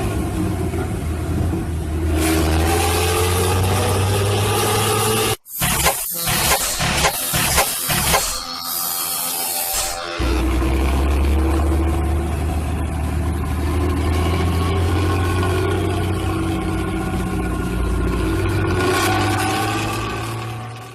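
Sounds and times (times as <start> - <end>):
bus diesel engine rumbling: 0.0 - 5.4, 10.2 - 20.8.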